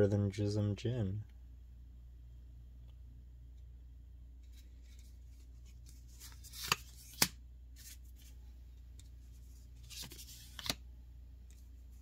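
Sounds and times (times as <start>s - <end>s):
trading cards rustling and flicking: 4.4s - 10.8s
sharp card snaps: 6.2s - 7.4s, 9.9s - 10.8s.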